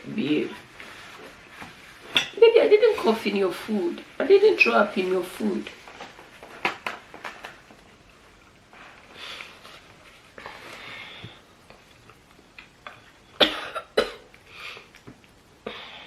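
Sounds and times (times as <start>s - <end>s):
faint breathing: 10.4s - 11.6s, 15.6s - 16.0s
person coughing: 13.4s - 14.2s.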